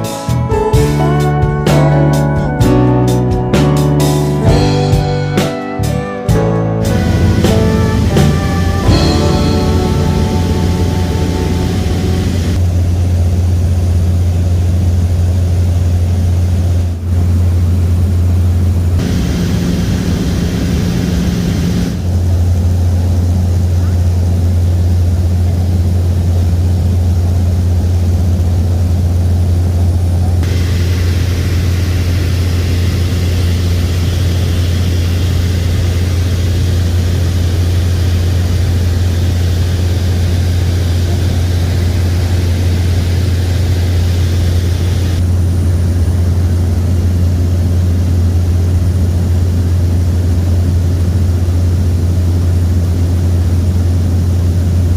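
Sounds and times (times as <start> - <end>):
propeller aircraft cabin drone: 0.0 - 54.9
high hiss: 6.8 - 12.6, 19.0 - 22.0, 30.4 - 45.2.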